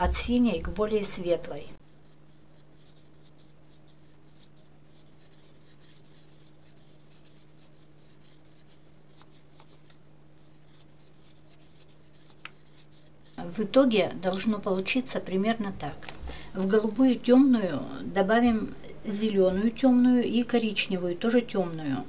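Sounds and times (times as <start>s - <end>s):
paintbrush strokes on paper: 0.0s - 14.9s
steady low hum: 0.0s - 22.0s.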